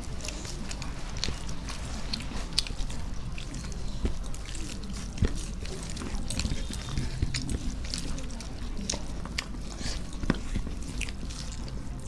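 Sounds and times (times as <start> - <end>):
low steady hum: 0.0 - 12.0
person chewing: 0.0 - 12.0.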